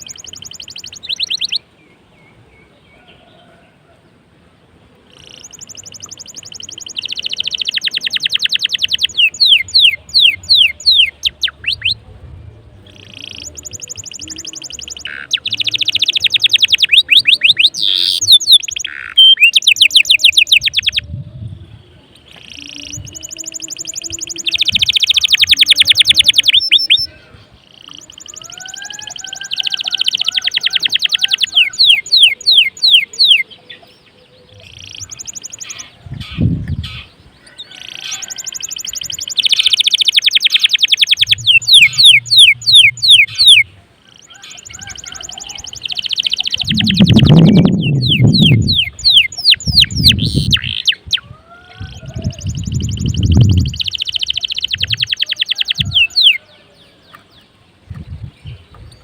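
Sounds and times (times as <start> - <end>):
canary singing trills: 0.0 - 2.0, 5.1 - 12.0, 12.7 - 59.0
low muffled noise: 9.6 - 16.0, 20.9 - 24.9.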